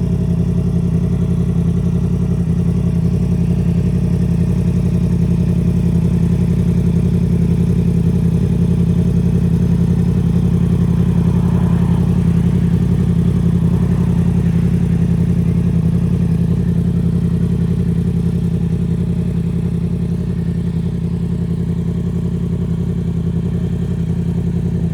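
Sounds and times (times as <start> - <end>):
motorcycle engine idling: 0.0 - 24.9.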